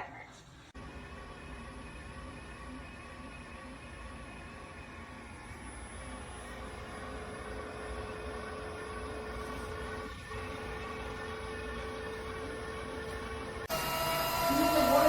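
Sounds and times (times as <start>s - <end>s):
vacuum mop motor whirring: 6.2s - 15.0s.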